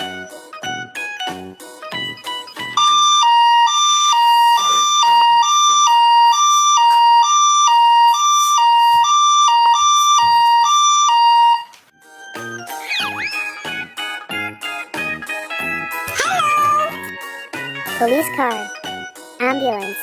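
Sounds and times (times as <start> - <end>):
two-tone toy siren: 2.8 - 11.8.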